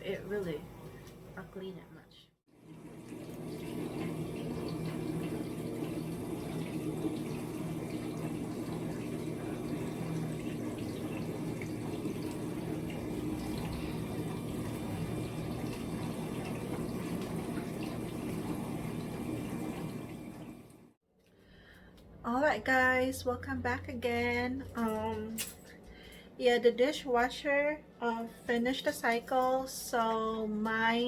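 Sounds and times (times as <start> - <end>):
dishwasher pump hum: 2.5 - 21.0
water spraying in dishwasher: 2.6 - 20.8.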